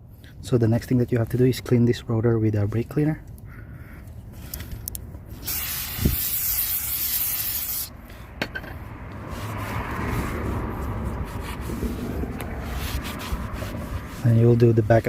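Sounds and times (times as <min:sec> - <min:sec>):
aerosol spray hissing: 0:05.4 - 0:07.9
soft rubbing: 0:09.2 - 0:15.0.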